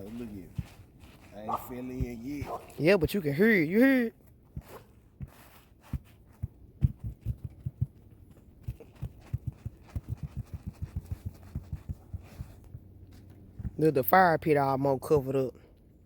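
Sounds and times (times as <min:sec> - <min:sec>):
footsteps crunching on icy snow: 0:00.0 - 0:03.3.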